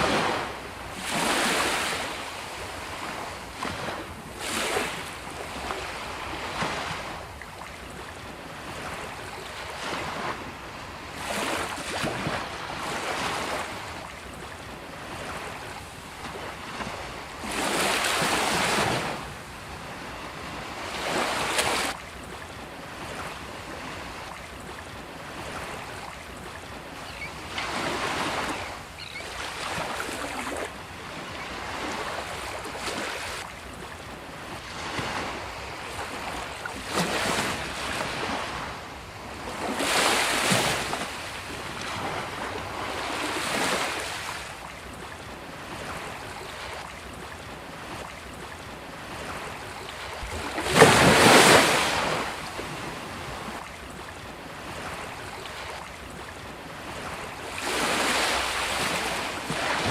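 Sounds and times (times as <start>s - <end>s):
sea waves breaking on beach: 0.0s - 59.9s.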